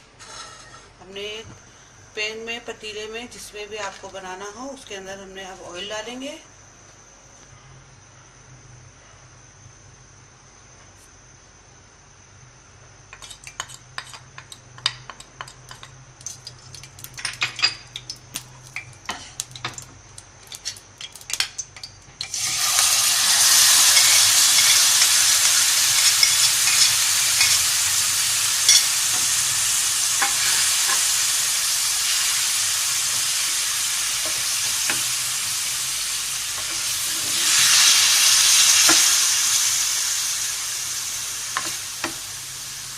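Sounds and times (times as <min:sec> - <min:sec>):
hot oil crackling: 0:13.2 - 0:42.9
chicken sizzling in oil: 0:22.2 - 0:42.9.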